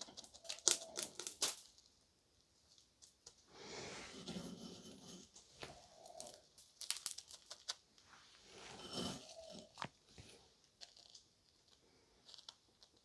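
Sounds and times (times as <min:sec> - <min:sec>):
biscuit crumbs crunching: 0:00.0 - 0:01.9, 0:05.7 - 0:08.0, 0:08.8 - 0:13.0.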